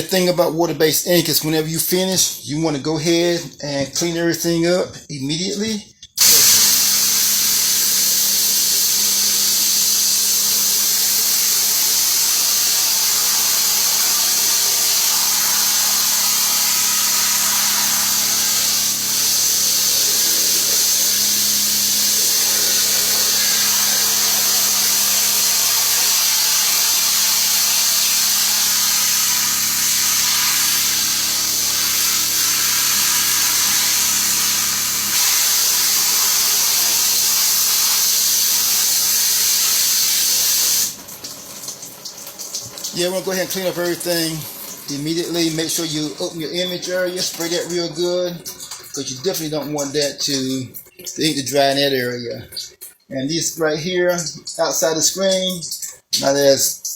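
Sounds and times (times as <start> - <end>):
pressure washer spray hiss: 6.2 - 41.0, 42.4 - 47.8
motor hum: 12.1 - 39.0.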